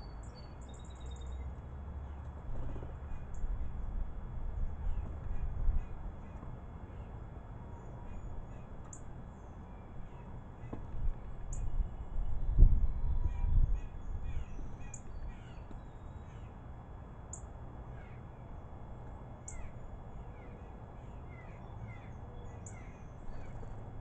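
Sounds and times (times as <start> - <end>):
birds chirping: 4.6 - 16.7, 17.3 - 24.0.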